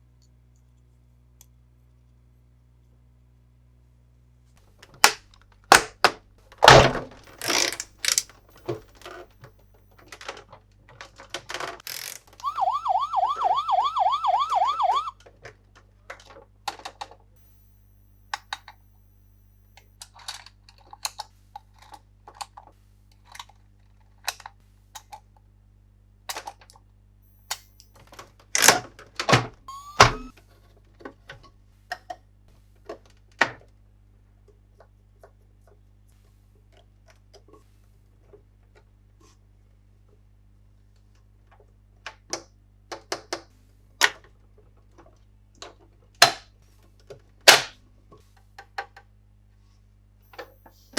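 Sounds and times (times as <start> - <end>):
toy electronic siren warble: 12.4 - 15.1, 29.7 - 30.3.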